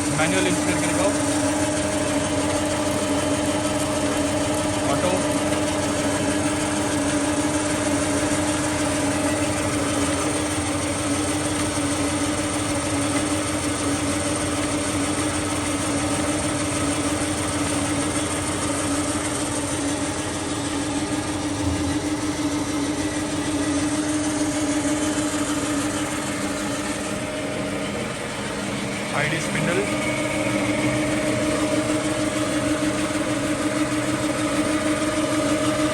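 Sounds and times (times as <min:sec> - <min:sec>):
grinder machine hum: 0:00.0 - 0:35.9
high whine: 0:21.5 - 0:23.5, 0:27.0 - 0:33.4.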